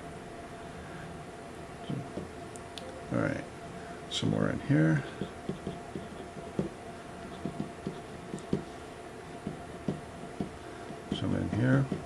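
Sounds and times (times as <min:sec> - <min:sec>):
marker tip tapping on cardstock: 0:05.2 - 0:06.7, 0:07.4 - 0:08.7, 0:09.4 - 0:12.0.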